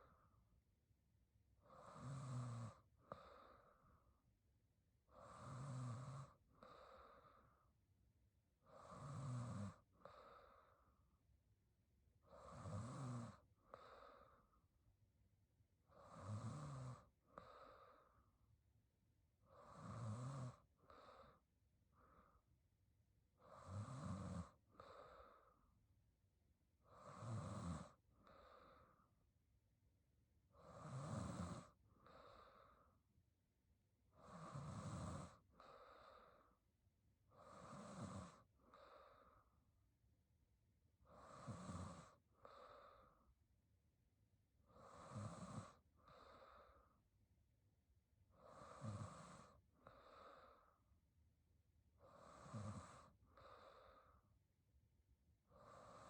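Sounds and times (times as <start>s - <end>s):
woman snoring softly: 1.6s - 4.4s, 5.0s - 7.8s, 8.5s - 11.2s, 12.2s - 14.8s, 15.8s - 18.6s, 19.3s - 22.6s, 23.2s - 25.8s, 26.7s - 29.4s, 30.4s - 33.2s, 34.0s - 39.9s, 40.9s - 43.6s, 44.5s - 47.2s, 48.2s - 51.2s, 51.8s - 54.6s, 55.4s - 56.0s.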